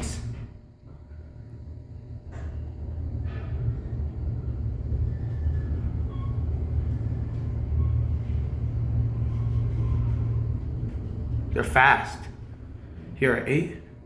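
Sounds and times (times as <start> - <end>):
elevator car riding up: 0.0 - 14.0.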